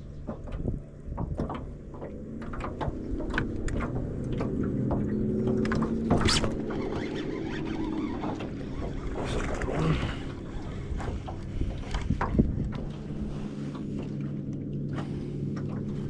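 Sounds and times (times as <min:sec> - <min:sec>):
fishing reel whirring: 0:06.0 - 0:11.4.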